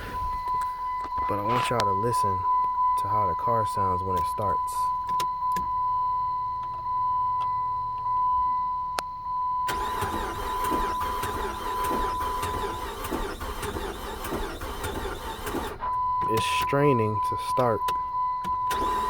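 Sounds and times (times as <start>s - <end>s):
high electronic warning tone: 0.0s - 8.0s, 15.6s - 19.0s
car engine cranking not starting: 9.7s - 16.8s, 18.7s - 19.0s.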